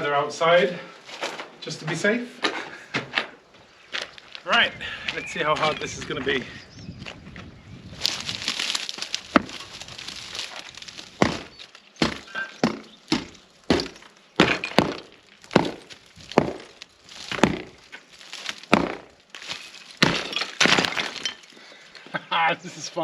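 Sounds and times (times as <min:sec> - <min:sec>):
debris rattling: 0:08.0 - 0:22.2.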